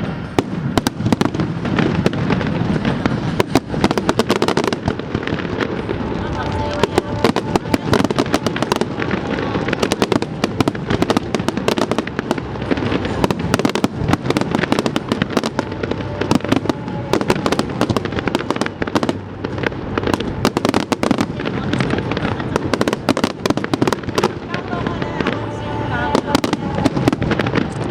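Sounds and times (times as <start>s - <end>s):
fireworks bangs and crackling pops: 0.0s - 27.9s.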